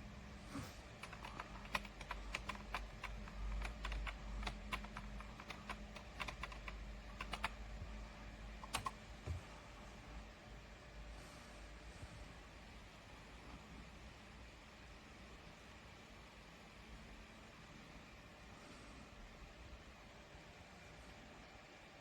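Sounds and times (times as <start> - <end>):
computer keyboard typing: 0.9 - 7.7, 8.5 - 9.0.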